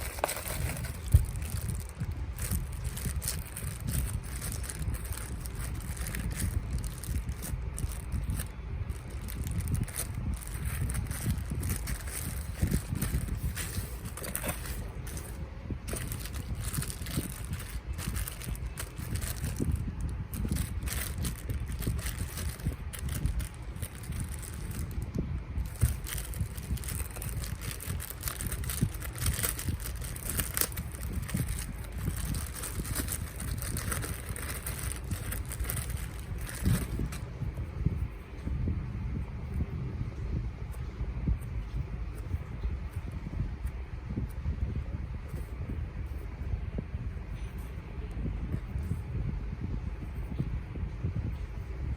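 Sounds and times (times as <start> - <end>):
plastic packaging crackling: 0.0 - 37.3
faint rustling: 0.0 - 38.5
low rumbling with soft thumps: 0.0 - 51.9.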